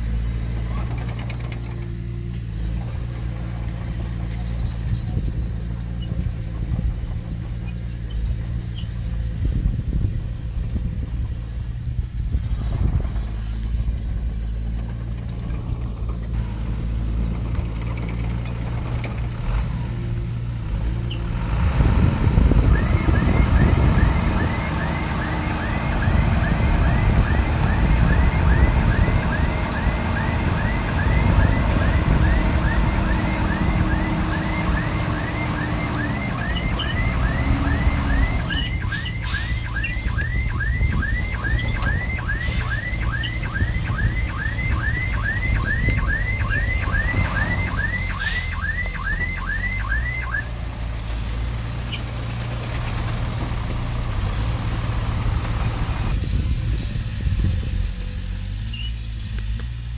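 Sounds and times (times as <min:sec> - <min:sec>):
diesel engine running: 0:00.0 - 0:59.9
reversing alarm chirping: 0:22.2 - 0:51.4.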